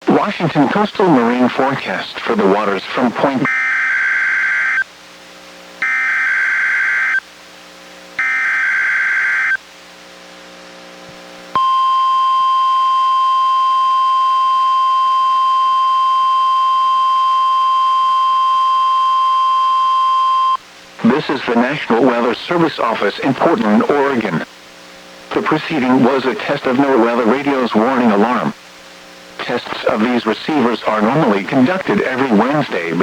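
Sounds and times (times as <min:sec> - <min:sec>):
long high alarm beep: 0:03.5 - 0:04.9, 0:05.8 - 0:07.2, 0:08.2 - 0:09.6, 0:11.6 - 0:20.6.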